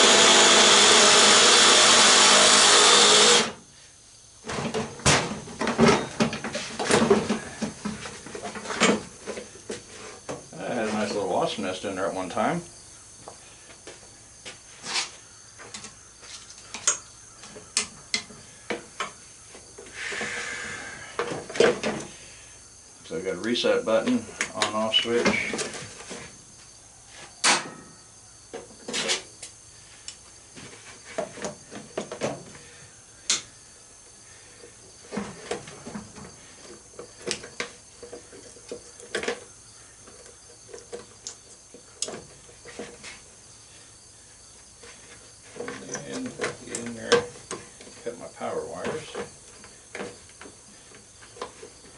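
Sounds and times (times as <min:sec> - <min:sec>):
scraping rustle: 0:14.6 - 0:15.3.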